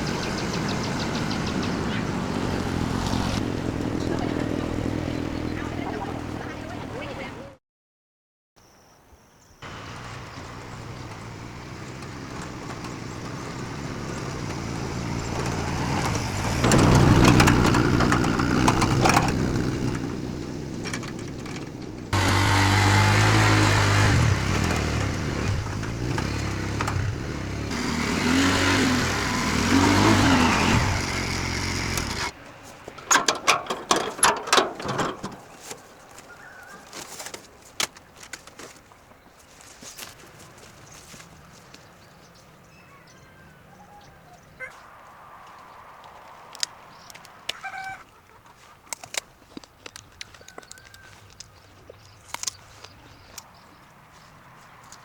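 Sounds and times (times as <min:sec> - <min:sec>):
motor engine running: 0:00.0 - 0:06.8, 0:09.6 - 0:32.4
sharp clicks and knocks: 0:32.9 - 0:35.8.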